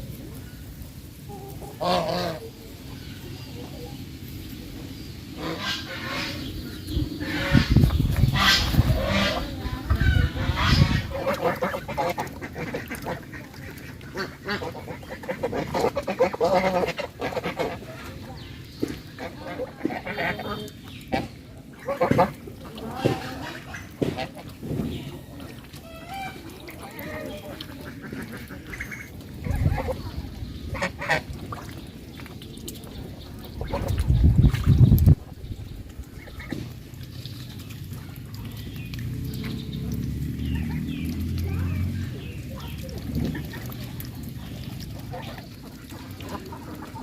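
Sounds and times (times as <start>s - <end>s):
low rumbling noise: 0.0s - 20.0s
goose honking: 1.8s - 2.4s, 5.4s - 6.5s, 7.2s - 17.9s.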